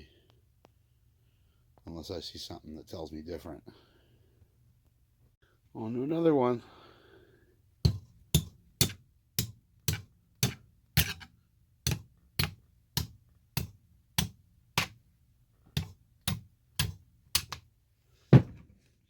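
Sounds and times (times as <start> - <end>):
hammer tapping on rock: 11.9 - 15.0.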